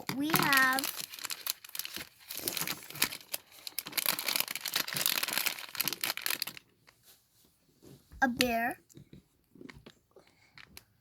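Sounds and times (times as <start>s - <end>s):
plastic packaging crinkling: 0.0s - 7.1s, 9.5s - 11.0s.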